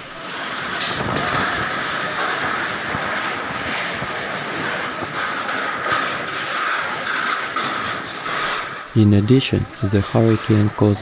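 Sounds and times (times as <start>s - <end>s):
strong storm wind rushing: 0.0s - 11.0s
wind buffeting microphone: 0.0s - 11.0s.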